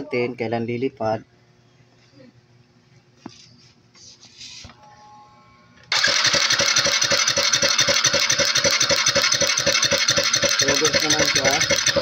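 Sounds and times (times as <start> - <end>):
motorcycle engine cranking: 5.9 - 12.0.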